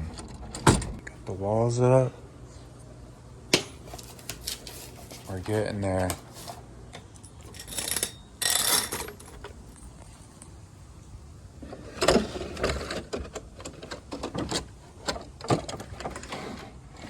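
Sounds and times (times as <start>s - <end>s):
drawer rolling on casters: 11.6s - 17.0s.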